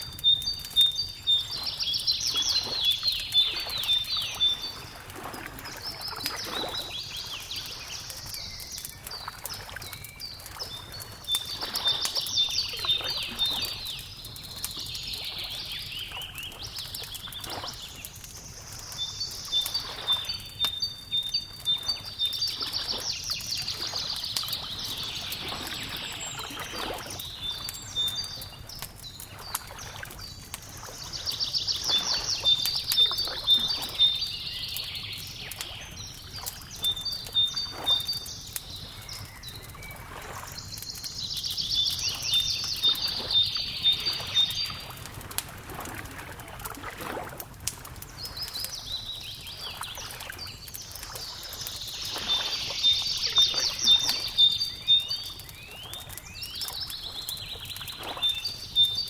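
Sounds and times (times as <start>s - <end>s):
wood fire crackling: 0.0s - 59.0s
lapping water: 0.8s - 20.8s, 21.6s - 41.0s, 41.9s - 58.6s
songbird trilling: 10.7s - 14.2s, 40.6s - 44.9s, 51.3s - 57.5s.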